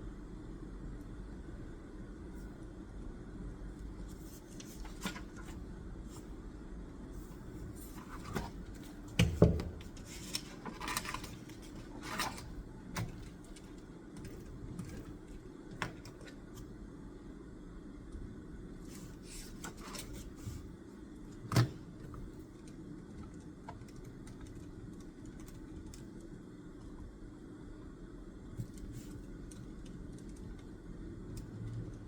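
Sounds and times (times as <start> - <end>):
low room hum: 0.0 - 32.0.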